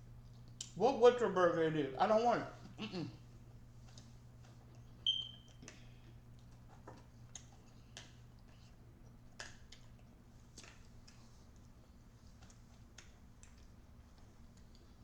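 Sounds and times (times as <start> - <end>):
low steady hum: 0.0 - 15.0
clicks and taps of eating: 0.2 - 0.8, 3.8 - 15.0.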